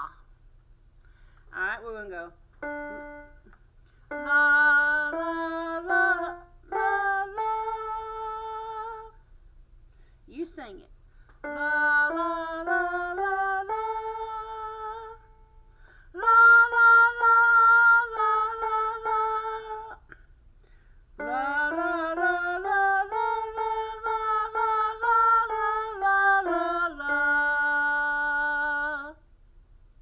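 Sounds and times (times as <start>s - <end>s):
electronic keyboard melody: 2.6s - 3.5s, 4.1s - 8.4s, 11.4s - 15.6s, 21.2s - 27.9s.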